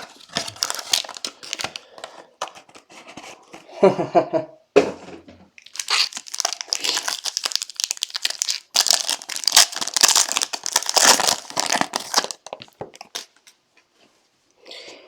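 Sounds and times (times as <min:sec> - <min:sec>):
plastic wrapping crinkling: 0:00.0 - 0:02.8, 0:05.6 - 0:13.5.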